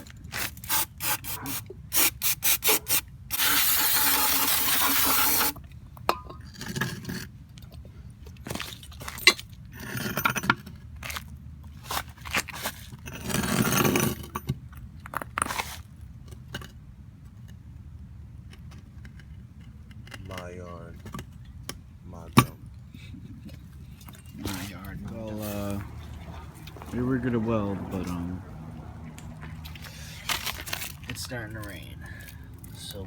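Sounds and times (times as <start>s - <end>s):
spray cleaner hissing: 0.4s - 5.5s.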